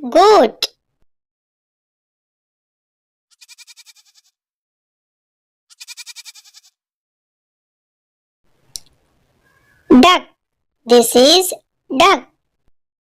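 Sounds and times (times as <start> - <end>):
goat bleating: 3.3 - 4.4, 5.7 - 6.8.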